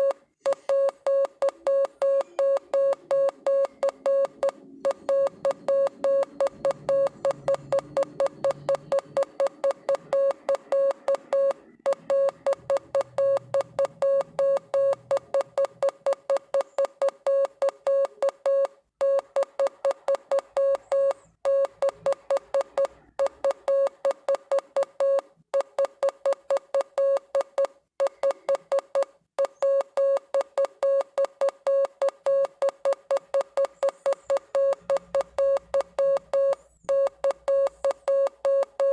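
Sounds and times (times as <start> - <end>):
morse code beeps: 0.0 - 38.9.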